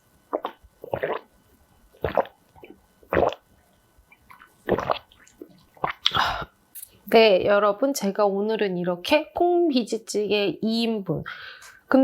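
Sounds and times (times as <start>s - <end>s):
wet slurping and chewing: 0.3s - 1.3s, 2.0s - 3.4s, 4.2s - 6.5s.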